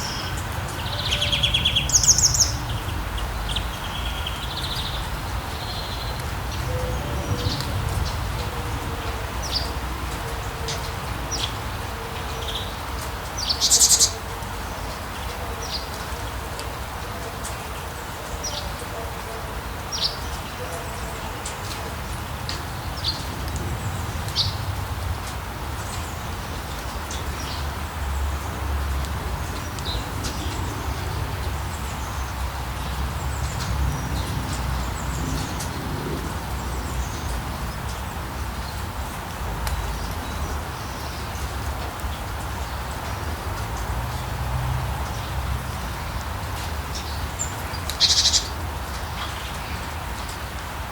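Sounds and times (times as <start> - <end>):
birds chirping: 0.0 - 14.2
rain falling: 0.0 - 50.9
low rumble: 5.2 - 10.3.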